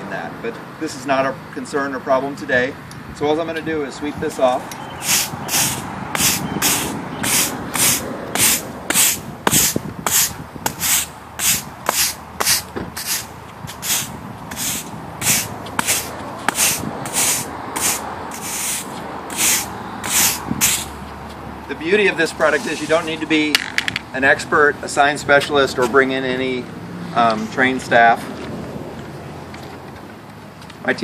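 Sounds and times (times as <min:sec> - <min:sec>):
broom sweeping pavement: 0:04.3 - 0:21.3, 0:22.0 - 0:23.4.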